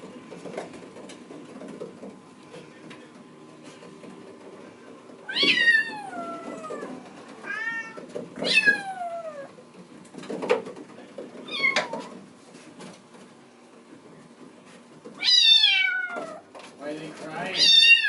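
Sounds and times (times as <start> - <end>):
kitten meowing loudly: 5.3 - 9.4, 17.5 - 18.0.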